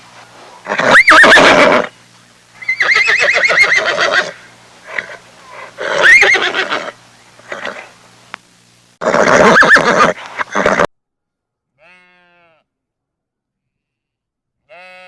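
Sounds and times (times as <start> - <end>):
horse whinnying: 0.6 - 1.9, 2.6 - 8.0, 9.0 - 10.9.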